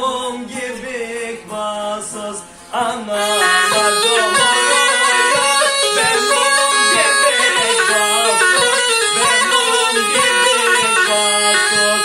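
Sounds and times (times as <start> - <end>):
saz: 0.0 - 12.0
bagpipe playing ornamented melody: 3.2 - 12.0.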